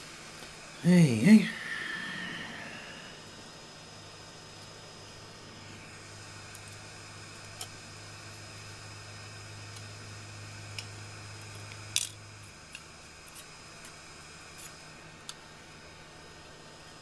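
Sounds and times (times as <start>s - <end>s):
steady background hum: 0.0s - 17.0s.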